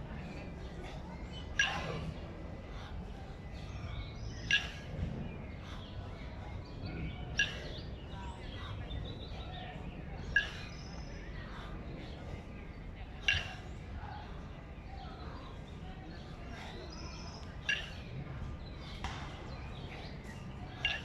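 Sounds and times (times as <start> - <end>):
faint chirps: 0.2 - 21.0
kettlebells clanking together: 1.5 - 2.1, 3.6 - 5.0, 7.2 - 7.8, 10.2 - 10.8, 13.2 - 13.7, 17.1 - 18.1, 19.6 - 21.0.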